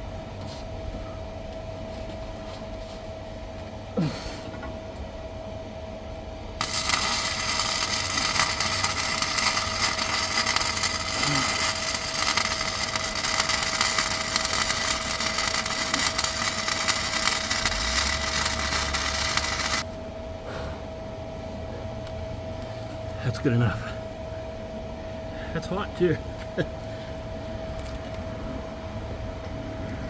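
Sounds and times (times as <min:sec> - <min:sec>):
welding arc crackling: 0:06.6 - 0:19.9.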